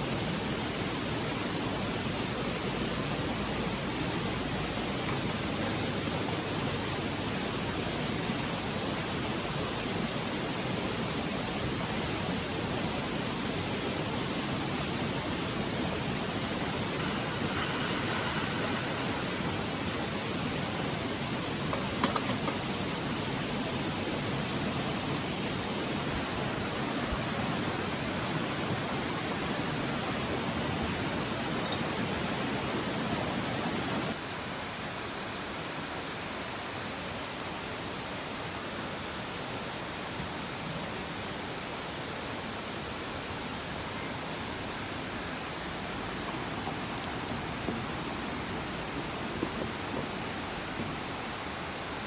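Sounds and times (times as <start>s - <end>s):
pressure lantern hissing: 15.9s - 32.6s
small click: 46.9s - 47.4s.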